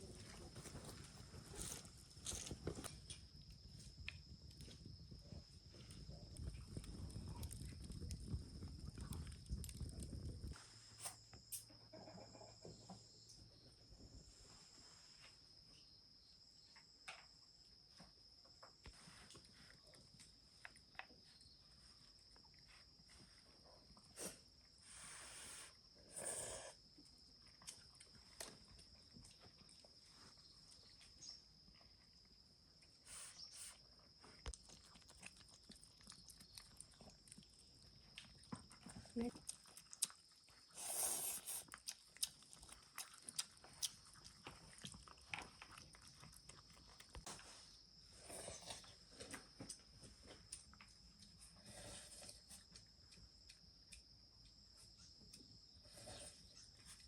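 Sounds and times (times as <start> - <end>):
dog chewing clicks and crunches: 34.4 - 40.6, 41.6 - 47.3.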